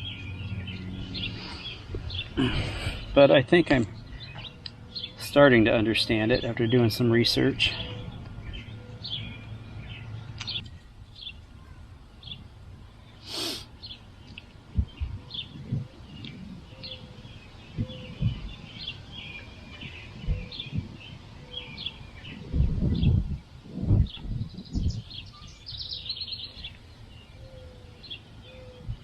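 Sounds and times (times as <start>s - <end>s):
birds chirping: 0.0s - 29.0s
brief hiss: 13.2s - 13.7s
dull low thumps and knocks: 14.7s - 16.4s, 17.7s - 18.6s.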